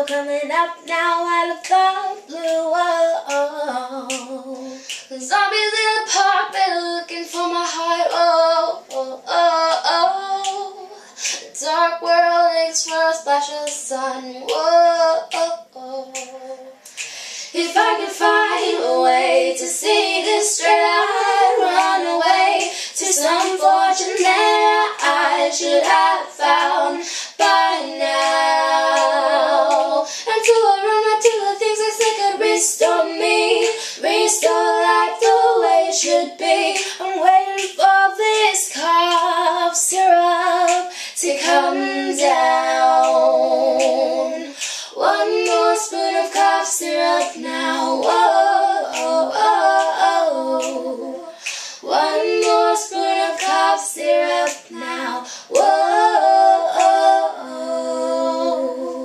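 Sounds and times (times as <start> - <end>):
girls singing a pop song: 0.0 - 59.0.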